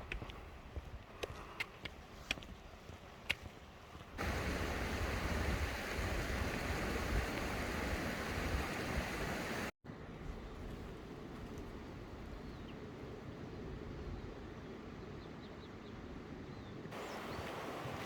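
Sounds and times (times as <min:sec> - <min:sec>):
rushing mountain stream: 0:02.7 - 0:09.7, 0:17.0 - 0:18.0.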